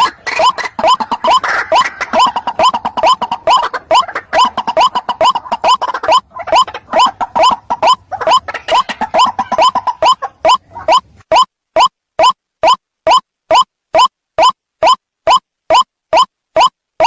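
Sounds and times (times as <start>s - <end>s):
waterhen croaking call: 0.0s - 16.7s.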